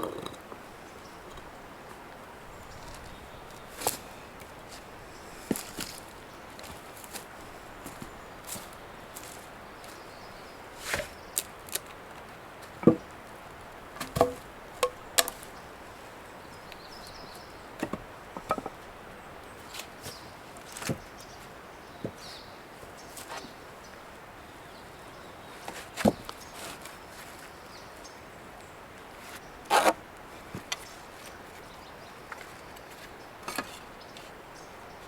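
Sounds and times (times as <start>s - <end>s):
lumber knocking together: 12.8s - 13.1s, 14.0s - 15.5s, 17.8s - 18.9s.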